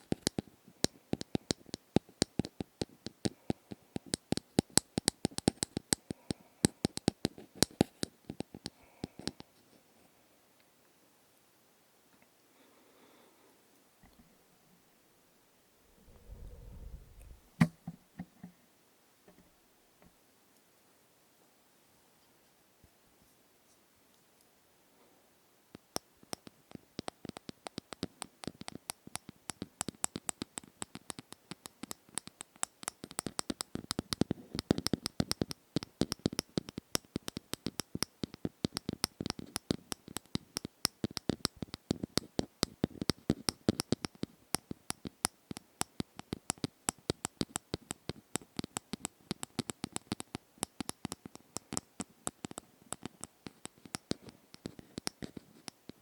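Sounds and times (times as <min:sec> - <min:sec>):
quick irregular tapping: 0:26.2 - 0:56.0.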